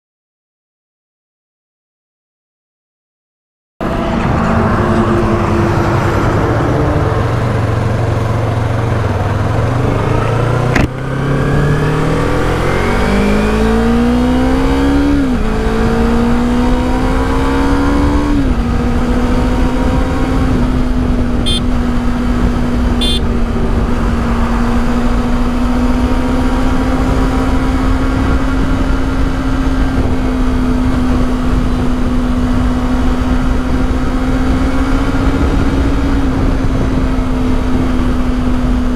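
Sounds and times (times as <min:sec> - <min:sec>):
motorcycle engine accelerating: 0:03.8 - 0:38.9
sharp click: 0:10.7 - 0:11.1.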